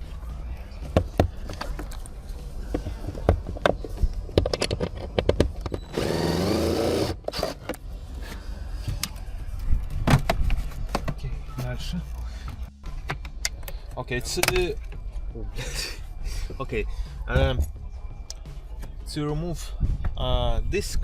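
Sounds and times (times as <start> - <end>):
cordless drill running: 5.9 - 7.2.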